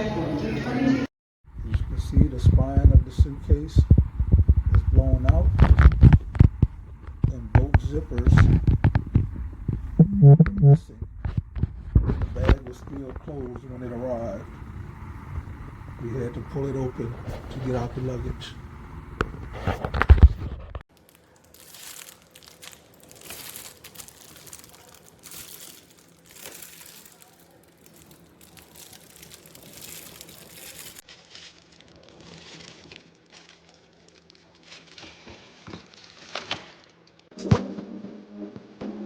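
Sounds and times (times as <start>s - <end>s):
rustling and crinkling handling: 1.6s - 10.0s, 11.1s - 14.6s, 19.2s - 37.3s
loud low burst: 9.9s - 11.0s.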